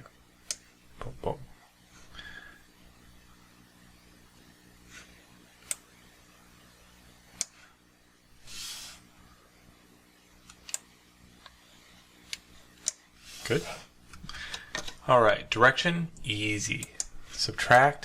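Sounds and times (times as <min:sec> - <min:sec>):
faint steady hum: 0:00.0 - 0:18.0
computer mouse clicks: 0:10.4 - 0:11.6.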